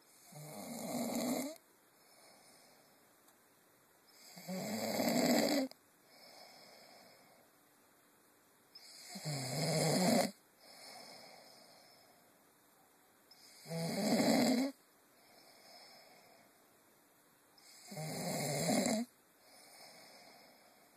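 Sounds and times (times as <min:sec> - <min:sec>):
man snoring: 0:00.2 - 0:01.6, 0:04.2 - 0:07.1, 0:08.8 - 0:11.9, 0:13.4 - 0:16.3, 0:17.6 - 0:20.8
soft breath: 0:01.9 - 0:03.3, 0:06.0 - 0:07.7, 0:10.6 - 0:12.6, 0:15.1 - 0:16.8, 0:19.4 - 0:20.9.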